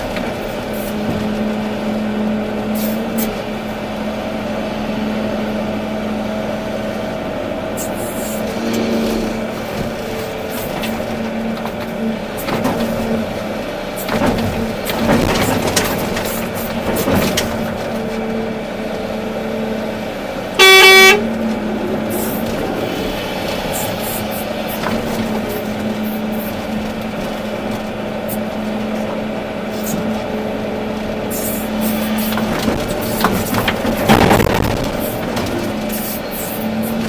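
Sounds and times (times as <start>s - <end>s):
excavator diesel engine running: 0.0s - 37.0s
knocking and rattling: 14.0s - 18.1s, 31.7s - 37.0s
horn sounding: 20.6s - 21.4s.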